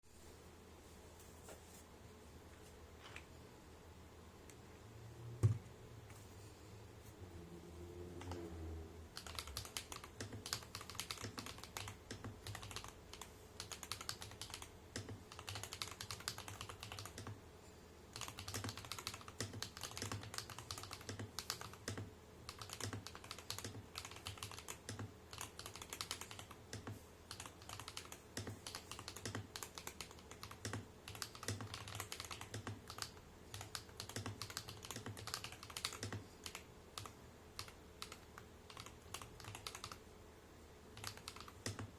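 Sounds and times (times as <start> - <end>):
fast typing on mechanical keyboard: 9.1 - 17.4, 18.1 - 40.0, 41.0 - 41.9.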